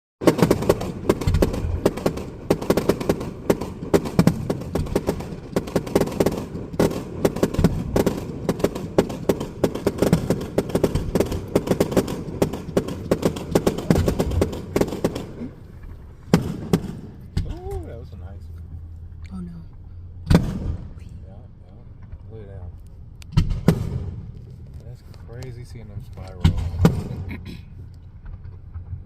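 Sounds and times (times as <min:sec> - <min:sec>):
fireworks bangs and cracks: 0:00.2 - 0:17.6, 0:20.2 - 0:21.0, 0:23.3 - 0:27.4.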